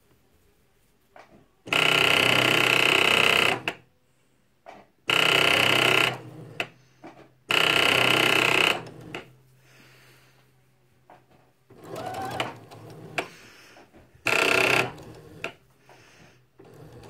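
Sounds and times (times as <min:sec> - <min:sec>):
sewing machine ringing buzz: 0:01.7 - 0:03.8, 0:05.1 - 0:06.6, 0:07.5 - 0:09.3, 0:11.7 - 0:13.2, 0:14.2 - 0:15.6, 0:16.6 - 0:17.0.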